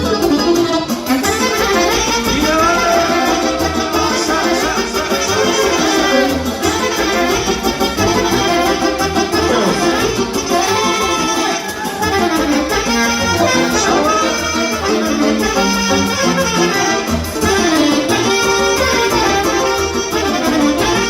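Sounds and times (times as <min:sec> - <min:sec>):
folk band playing melody: 0:00.0 - 0:21.0
steady bass beat: 0:12.8 - 0:16.1.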